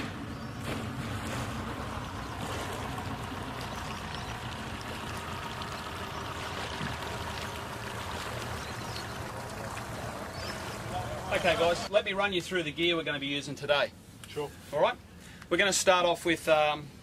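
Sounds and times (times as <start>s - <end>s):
boat motor running: 0.0s - 11.9s
water rushing along hull: 0.0s - 11.9s.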